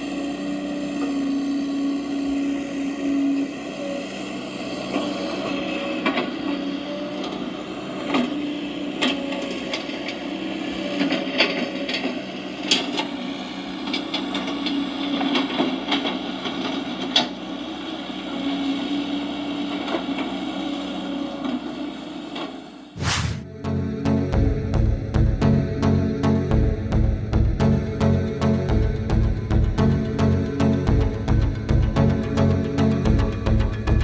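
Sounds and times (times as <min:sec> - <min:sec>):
short whoosh: 0:23.0 - 0:23.6
music: 0:23.4 - 0:34.0.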